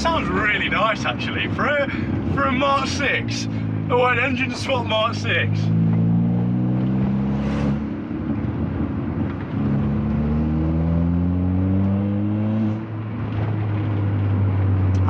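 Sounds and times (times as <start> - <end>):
exhaust blowing at joints: 0.0 - 11.8
car engine accelerating: 0.0 - 15.0.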